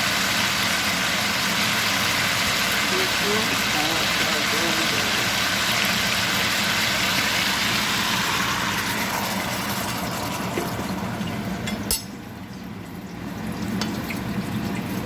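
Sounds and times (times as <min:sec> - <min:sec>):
oil sizzling in a pot: 0:00.0 - 0:15.0.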